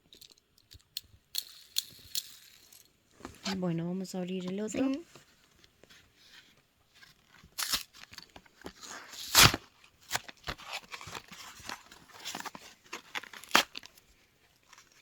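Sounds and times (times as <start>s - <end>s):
packaging ripping: 7.5s - 14.0s.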